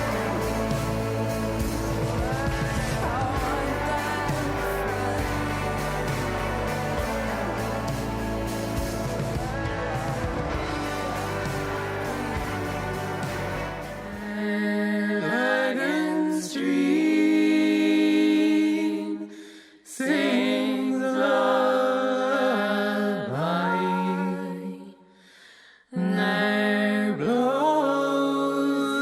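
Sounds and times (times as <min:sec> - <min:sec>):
person singing long sliding notes: 0:00.0 - 0:19.2.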